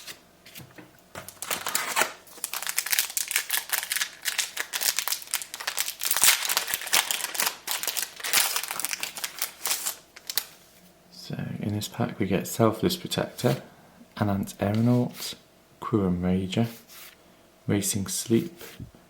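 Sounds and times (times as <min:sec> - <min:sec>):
cards rustling: 0:01.2 - 0:10.6
wrapper tearing and crinkling: 0:01.2 - 0:10.6.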